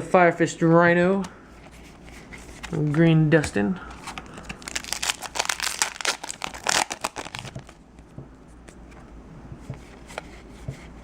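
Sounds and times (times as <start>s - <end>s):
foil wrapper crinkling and tearing: 4.1s - 7.8s.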